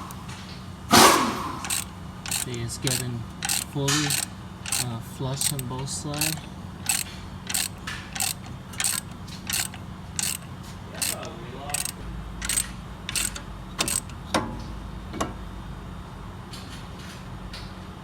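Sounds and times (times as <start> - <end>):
ratcheting tool clicking: 0.9 - 14.3.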